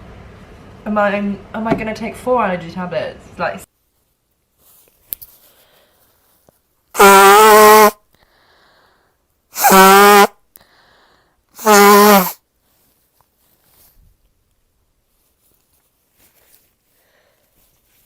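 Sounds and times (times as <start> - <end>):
person blowing nose: 6.9 - 8.1, 9.5 - 10.4, 11.6 - 12.4.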